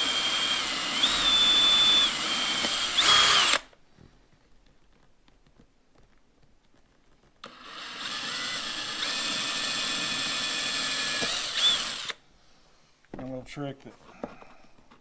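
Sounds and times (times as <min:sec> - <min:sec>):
cordless drill boring fiberglass: 0:00.0 - 0:03.7, 0:07.4 - 0:12.2.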